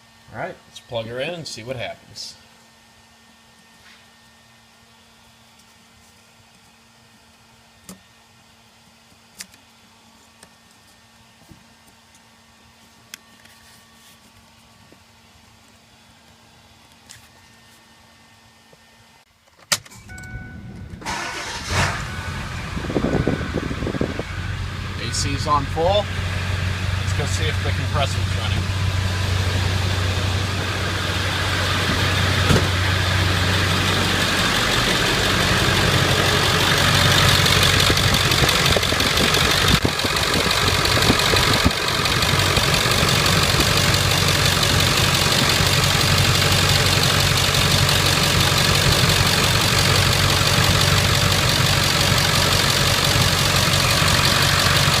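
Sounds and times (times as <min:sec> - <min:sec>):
car engine idling: 0:20.4 - 0:55.0.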